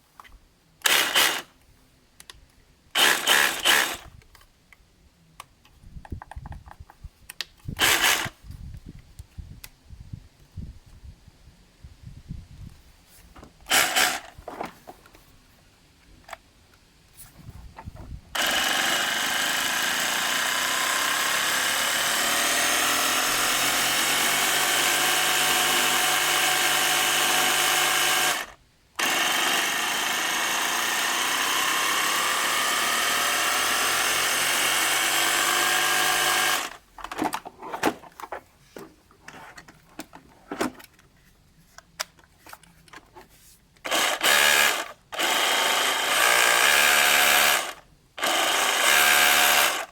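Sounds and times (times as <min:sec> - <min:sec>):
rotary hammer whining: 0:13.7 - 0:14.3, 0:18.4 - 0:36.8
clicks and handling knocks: 0:37.0 - 0:43.3.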